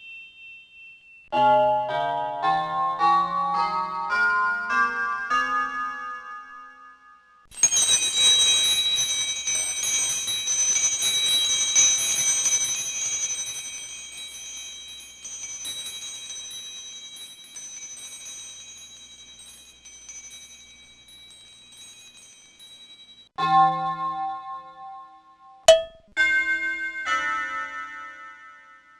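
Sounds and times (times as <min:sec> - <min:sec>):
small metal bell ringing: 0:00.0 - 0:01.3, 0:06.2 - 0:23.7
different bell tone: 0:00.0 - 0:03.7, 0:05.5 - 0:25.1, 0:25.7 - 0:28.9.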